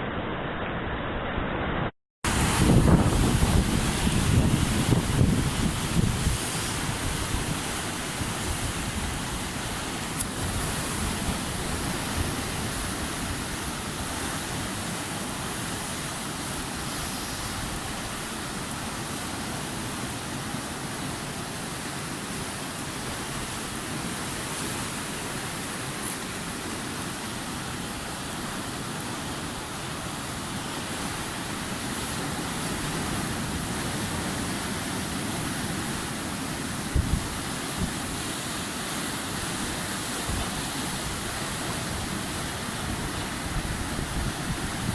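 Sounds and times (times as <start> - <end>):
strong wind blowing: 0.0 - 9.8, 36.8 - 38.3, 39.7 - 44.9
surf breaking: 2.3 - 18.7.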